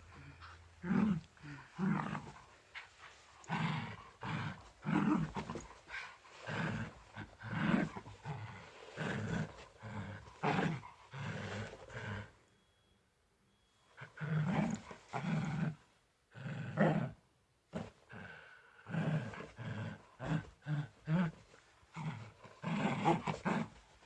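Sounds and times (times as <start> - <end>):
dog growling: 0.0 - 12.4, 17.8 - 23.8.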